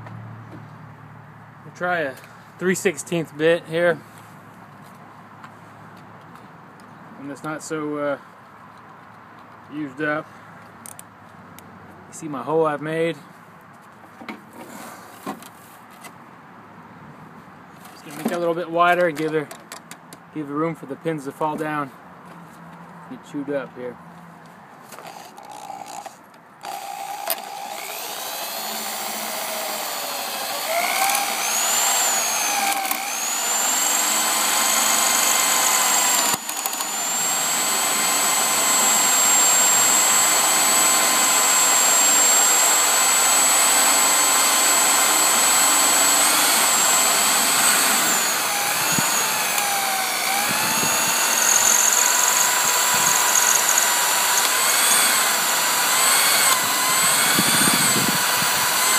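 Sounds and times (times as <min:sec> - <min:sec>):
electric drill boring into metal lock: 0:25.0 - 0:58.9.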